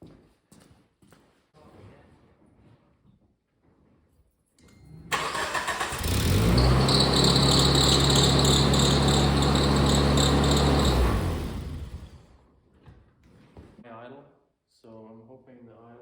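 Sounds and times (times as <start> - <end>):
car engine cranking and running: 5.1 - 12.2
high-pitched squeal: 5.2 - 12.1.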